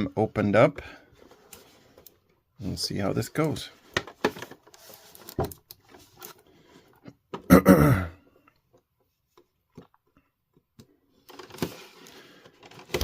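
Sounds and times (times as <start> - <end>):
packaging knocks and clicks: 10.8 - 13.0.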